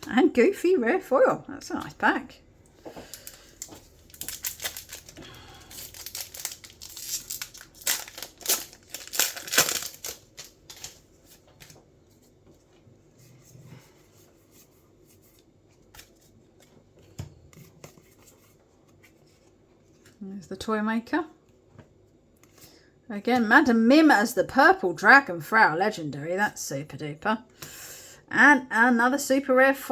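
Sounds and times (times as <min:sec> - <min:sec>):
wrapper tearing and crinkling: 0:03.1 - 0:11.0.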